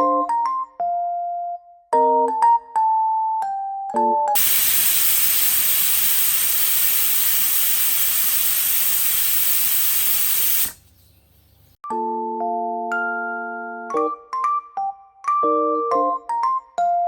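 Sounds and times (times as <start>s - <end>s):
soft mallet keyboard music: 0.0s - 4.3s, 11.8s - 17.0s
loud steady hiss: 4.4s - 11.0s.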